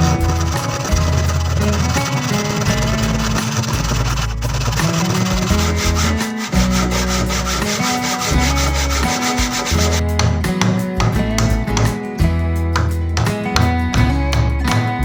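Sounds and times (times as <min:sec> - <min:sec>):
wood being sanded: 0:00.0 - 0:10.0
background music with bass: 0:00.0 - 0:15.0.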